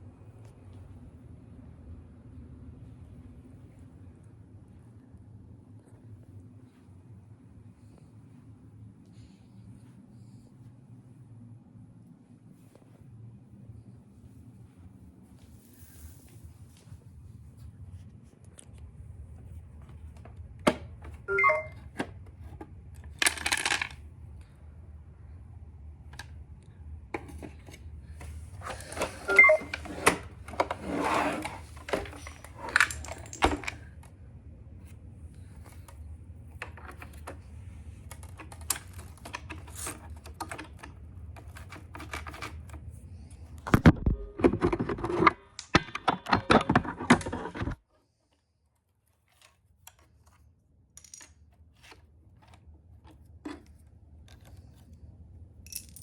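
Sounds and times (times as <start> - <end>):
plastic bricks clattering: 23.1 - 24.0.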